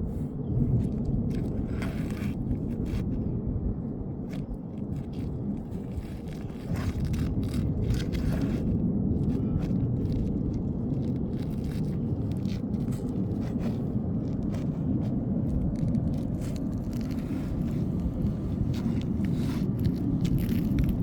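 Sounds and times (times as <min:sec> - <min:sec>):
steady low rumble: 0:00.0 - 0:21.0
hand tools scraping shingles: 0:04.4 - 0:21.0.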